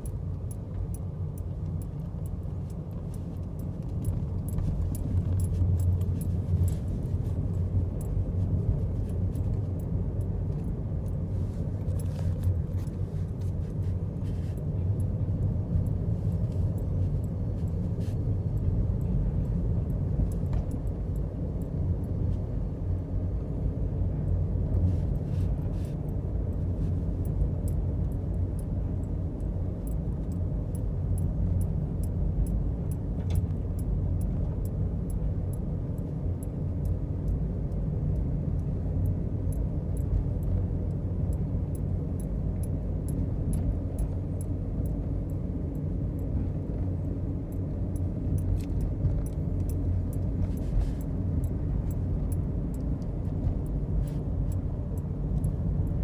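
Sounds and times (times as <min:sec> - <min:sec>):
car driving rumble: 0:00.0 - 0:56.0
faint ticks: 0:24.2 - 0:56.0.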